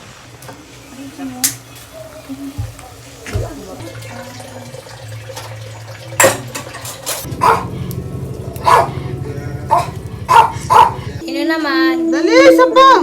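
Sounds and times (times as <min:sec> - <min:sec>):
dog barking: 0:07.3 - 0:11.2
steady low hum: 0:07.3 - 0:11.2.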